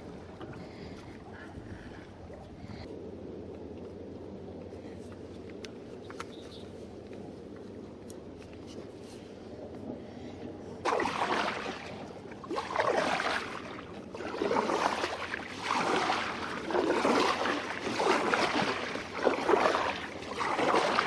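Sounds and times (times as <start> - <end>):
kayak paddle splashing water: 10.8 - 21.0.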